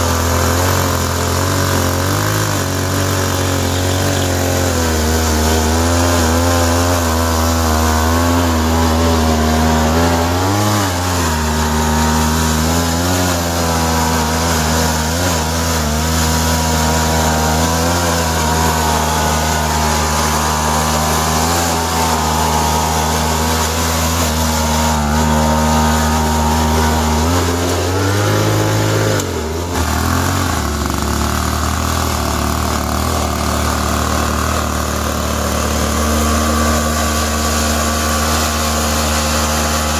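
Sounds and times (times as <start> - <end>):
model truck engine drone: 0.0 - 39.9.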